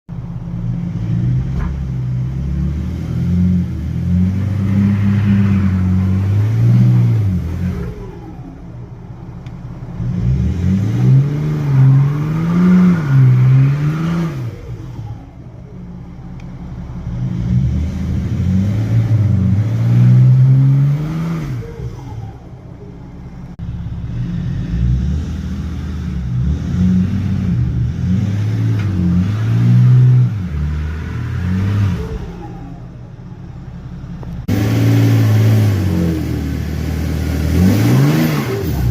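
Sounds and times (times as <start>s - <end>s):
car engine revving: 0.1s - 38.9s.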